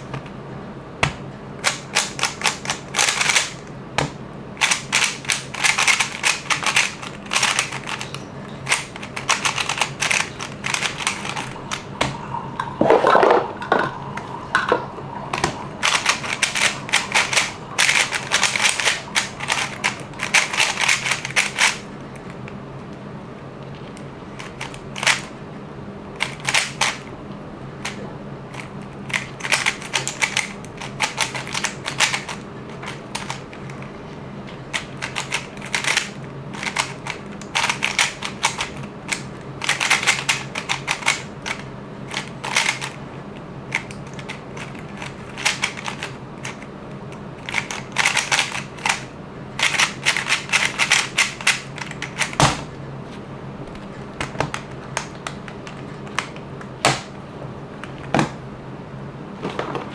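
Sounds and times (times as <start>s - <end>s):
puzzle cube layer turns clacking: 4.6s - 11.8s, 15.4s - 21.8s.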